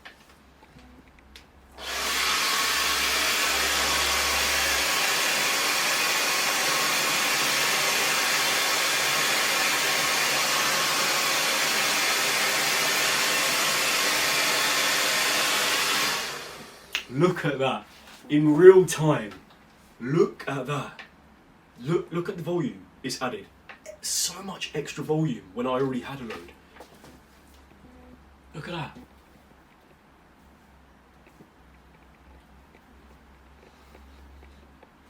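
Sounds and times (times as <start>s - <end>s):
hair dryer blowing: 1.8s - 17.0s.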